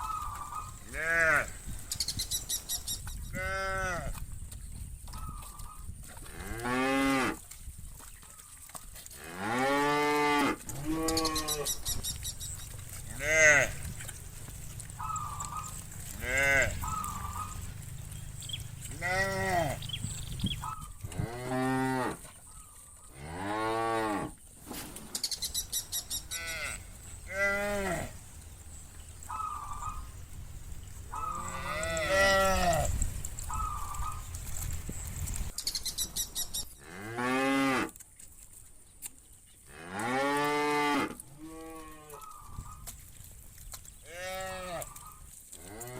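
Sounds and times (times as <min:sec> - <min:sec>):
cattle mooing: 0:09.2 - 0:11.8, 0:13.0 - 0:20.2, 0:26.0 - 0:30.2, 0:31.1 - 0:33.0, 0:39.8 - 0:42.2.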